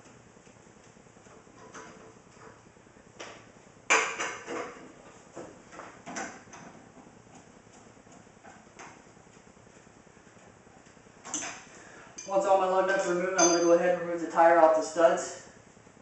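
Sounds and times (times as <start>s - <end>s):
tire iron and lug nuts clanking: 13.3s - 13.9s.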